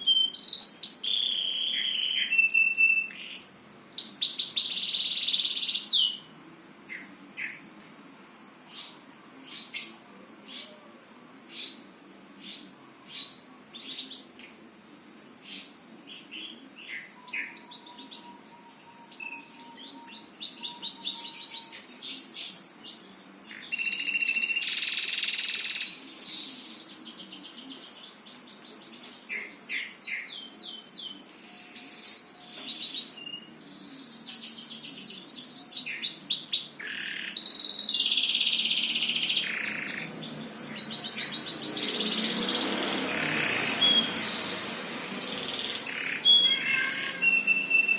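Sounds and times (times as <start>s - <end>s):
songbird trilling: 16.9s - 26.8s, 43.2s - 47.9s.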